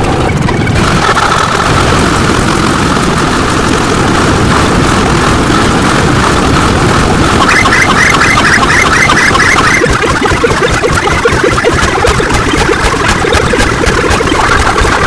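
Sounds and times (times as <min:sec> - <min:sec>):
engine-like rumble: 0:00.0 - 0:15.0
layered sound effects: 0:00.0 - 0:15.0
rapid chirping pulses: 0:05.3 - 0:15.0.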